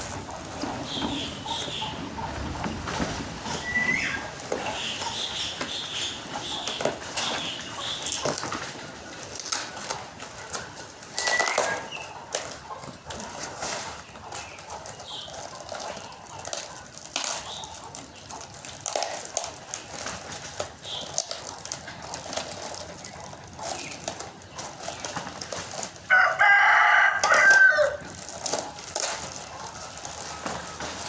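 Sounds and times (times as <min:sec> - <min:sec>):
rooster crowing: 0:26.1 - 0:28.0
faint clicks and rustles: 0:28.0 - 0:31.0.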